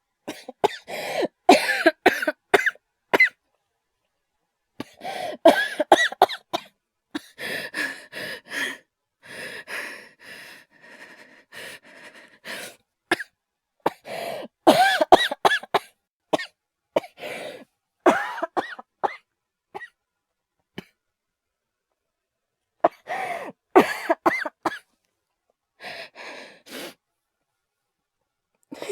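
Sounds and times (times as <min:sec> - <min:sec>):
man coughing: 0:14.7 - 0:16.5, 0:18.1 - 0:18.8, 0:23.8 - 0:24.8.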